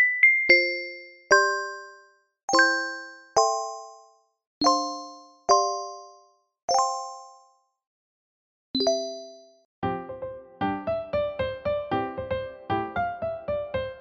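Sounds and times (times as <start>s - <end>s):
bell-like mallet chimes: 0.0s - 7.6s, 8.8s - 9.7s.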